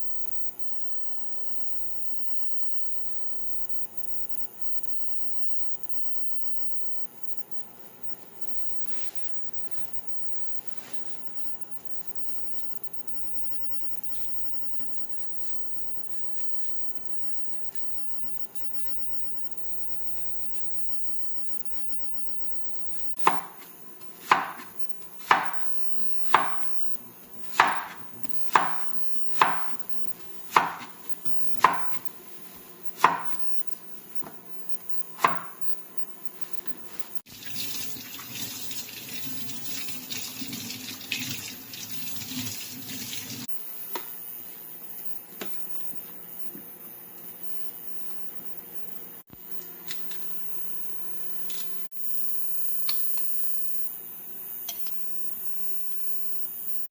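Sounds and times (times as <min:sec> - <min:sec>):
knife chopping on a cutting board: 0:23.2 - 0:26.8, 0:27.5 - 0:29.8, 0:30.5 - 0:32.0, 0:33.0 - 0:33.5, 0:35.2 - 0:35.6
kitchen tap running: 0:37.3 - 0:43.5.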